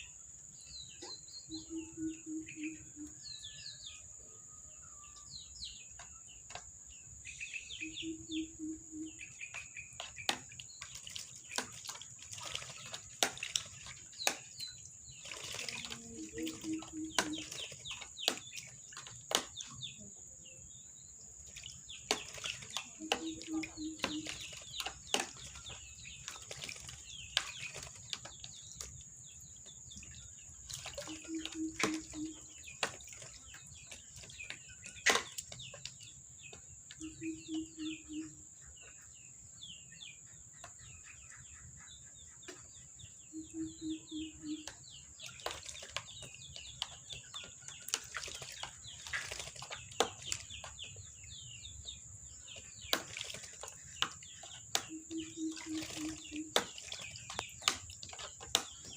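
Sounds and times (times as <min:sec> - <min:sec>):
water splashes: 0:09.4 - 0:20.0, 0:21.3 - 0:36.1, 0:44.2 - 0:58.9.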